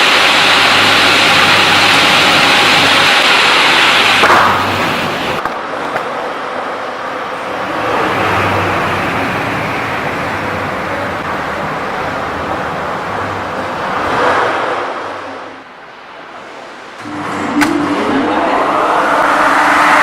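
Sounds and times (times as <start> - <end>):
saw cutting timber: 0.0 - 5.4, 7.4 - 15.0.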